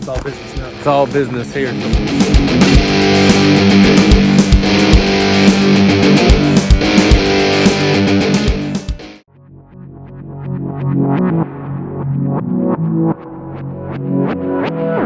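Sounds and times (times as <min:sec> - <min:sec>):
electric guitar rock music: 0:00.0 - 0:09.2.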